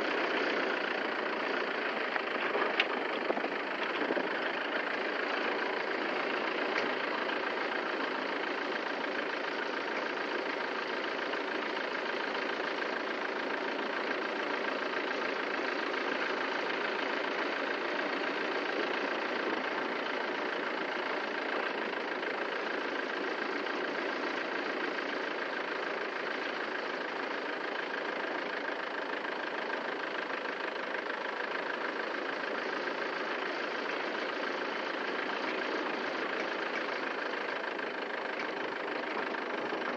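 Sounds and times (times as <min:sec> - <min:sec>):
engine running steadily: 0:00.0 - 0:39.9.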